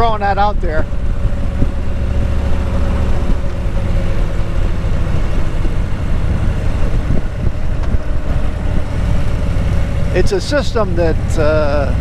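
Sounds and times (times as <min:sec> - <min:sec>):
constant hum: 0:00.0 - 0:12.0
motor vehicle rumbling: 0:00.0 - 0:12.0.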